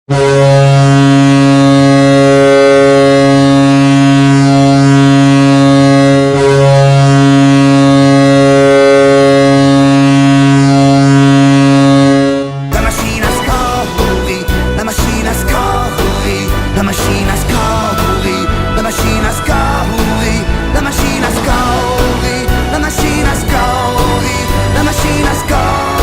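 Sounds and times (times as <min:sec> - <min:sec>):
arena air horn blast: 0:00.1 - 0:26.0.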